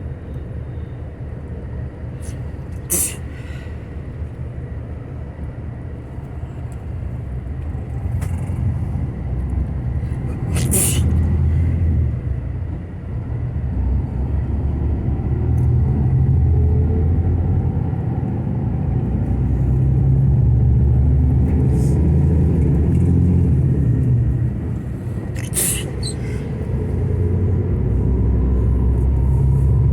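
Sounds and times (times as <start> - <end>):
bus engine and road rumble: 0.0 - 29.9
sharp hiss burst: 25.4 - 26.1.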